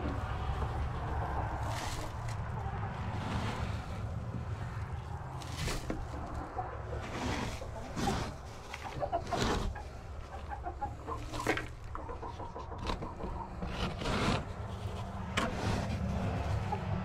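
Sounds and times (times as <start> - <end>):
chickens clucking softly: 6.0 - 13.8, 16.4 - 17.0.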